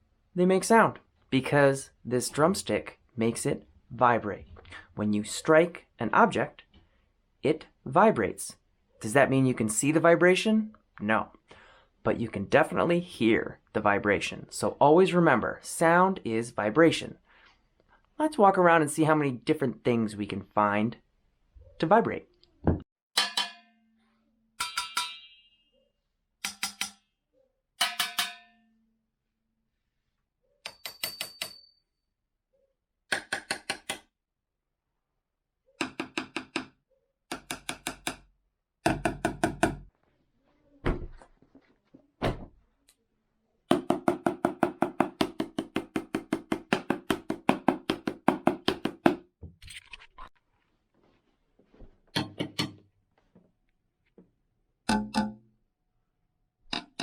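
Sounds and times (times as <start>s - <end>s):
drumstick tapping household objects: 23.2s - 23.7s, 24.6s - 25.4s, 26.4s - 27.0s, 27.8s - 28.5s, 43.7s - 49.2s, 52.2s - 52.8s, 54.9s - 55.4s, 56.7s - 57.0s.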